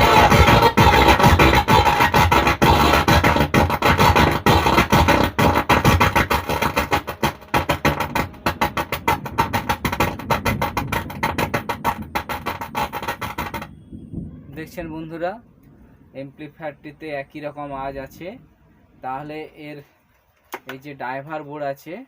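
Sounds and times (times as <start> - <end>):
distorted song through speaker: 0.0 - 13.7.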